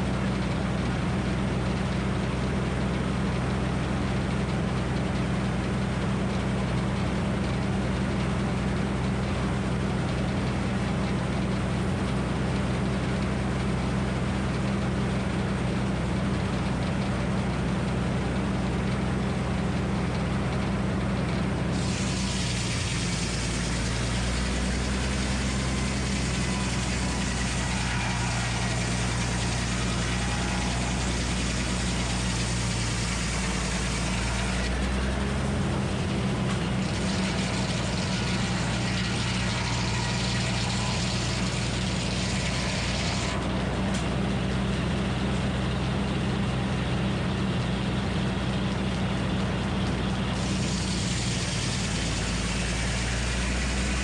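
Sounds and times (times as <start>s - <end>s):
engine running: 0.0s - 54.0s
saw blade cutting log: 21.7s - 44.0s, 50.4s - 54.0s.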